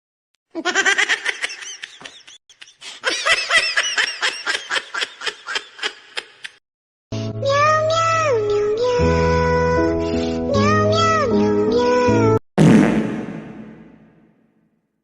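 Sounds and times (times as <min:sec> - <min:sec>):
high-pitched laughter: 0:00.5 - 0:06.6.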